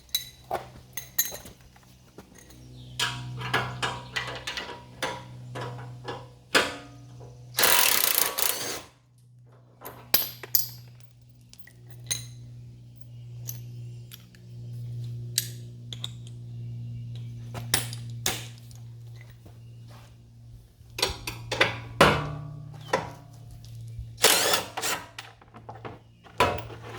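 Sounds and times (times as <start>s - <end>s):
steady low hum: 0.0s - 26.9s
metallic clinks of hand tools: 0.1s - 1.5s.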